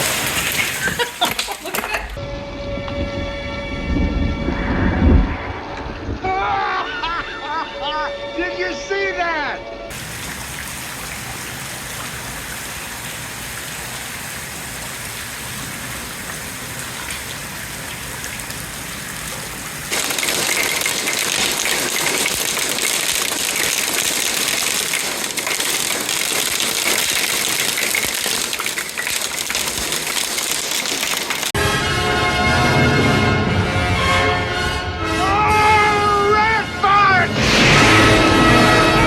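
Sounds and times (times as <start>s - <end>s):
heavy rain and hail pelting: 0.0s - 2.2s, 9.9s - 31.6s.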